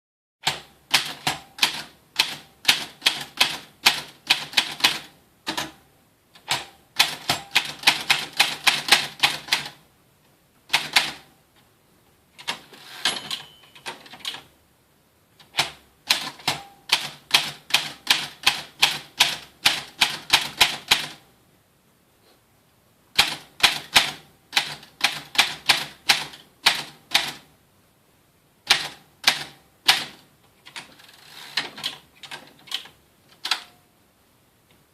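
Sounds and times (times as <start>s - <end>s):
typewriter key strikes: 6.4s - 9.3s, 12.4s - 14.4s.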